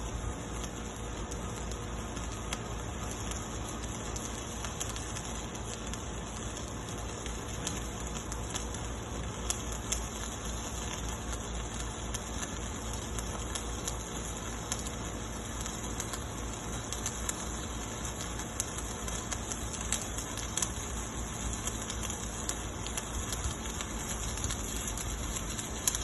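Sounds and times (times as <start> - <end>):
welding arc crackling and popping: 0.0 - 26.0.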